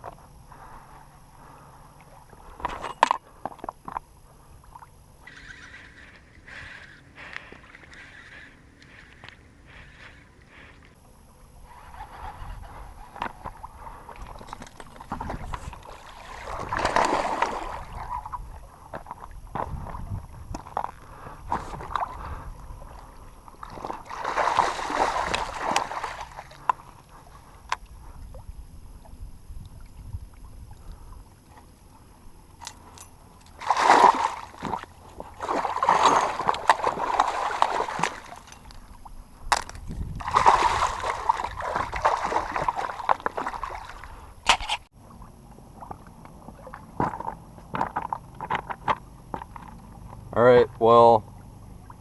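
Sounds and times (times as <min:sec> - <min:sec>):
fish thrashing splashes: 0:11.7 - 0:18.3, 0:23.6 - 0:26.6, 0:33.6 - 0:38.5, 0:40.2 - 0:44.2.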